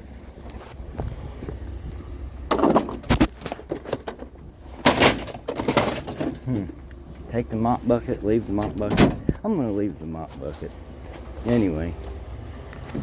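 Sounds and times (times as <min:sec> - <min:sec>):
junk knocking and rattling: 0:02.4 - 0:07.3, 0:08.5 - 0:09.5.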